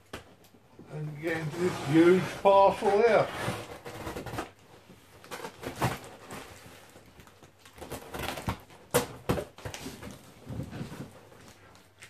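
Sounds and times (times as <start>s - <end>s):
cardboard box scraping: 1.1s - 4.6s.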